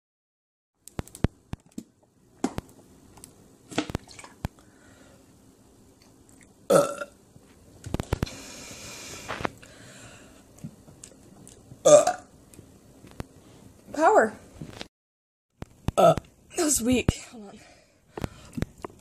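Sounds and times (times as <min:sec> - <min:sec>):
person burping loudly: 0:06.7 - 0:07.2, 0:11.8 - 0:12.3, 0:15.9 - 0:16.3.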